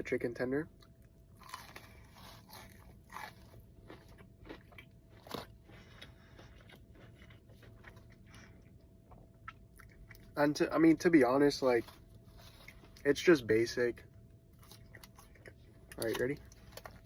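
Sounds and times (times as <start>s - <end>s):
chewing crispy chicken: 0.8s - 10.4s, 14.4s - 17.0s.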